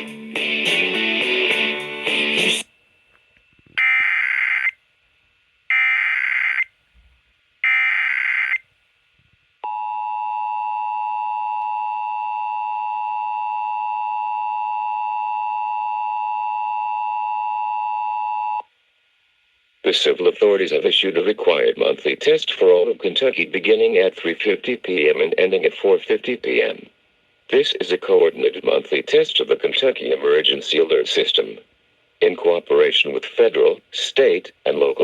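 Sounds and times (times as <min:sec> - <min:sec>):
screeching digital data tones: 0:03.8 - 0:04.8, 0:05.7 - 0:06.7, 0:07.6 - 0:08.6.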